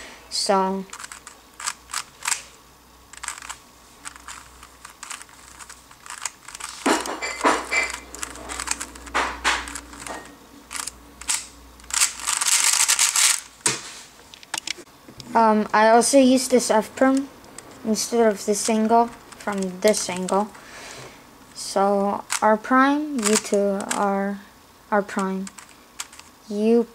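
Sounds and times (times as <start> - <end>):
plastic puzzle cube clicking: 0.8 - 2.5, 3.1 - 13.5, 18.5 - 20.5, 21.6 - 22.5, 23.2 - 24.1, 25.1 - 26.4.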